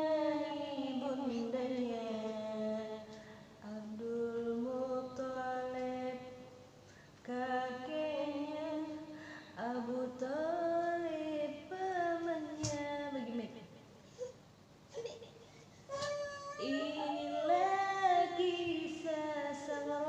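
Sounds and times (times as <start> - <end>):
child singing held notes: 15.9 - 20.0.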